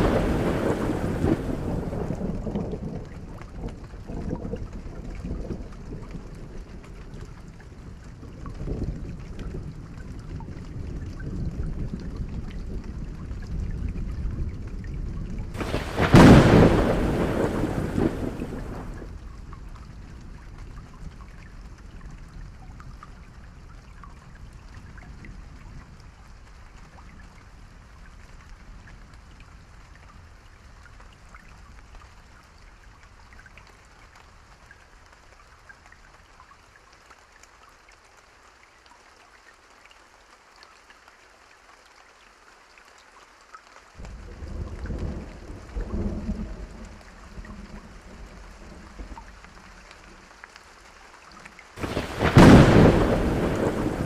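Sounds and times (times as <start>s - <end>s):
thunder rumbling: 0.0s - 6.6s, 15.6s - 19.2s, 44.0s - 49.8s, 51.8s - 54.0s
raindrops ticking: 0.0s - 26.0s, 30.9s - 54.0s
steady rain falling: 0.0s - 54.0s.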